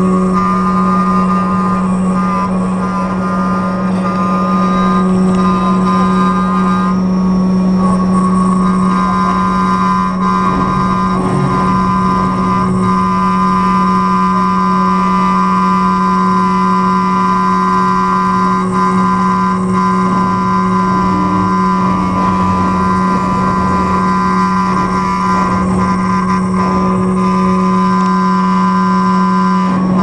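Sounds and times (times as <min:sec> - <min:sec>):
engraving machine hum and whine: 0:00.0 - 0:30.0.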